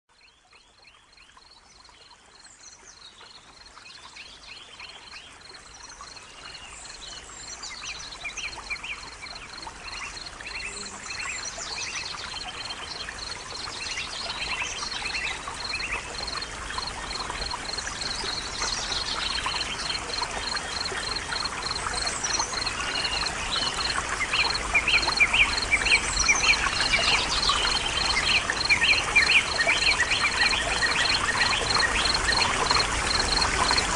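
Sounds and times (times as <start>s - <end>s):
trickling water: 0.1s - 33.9s.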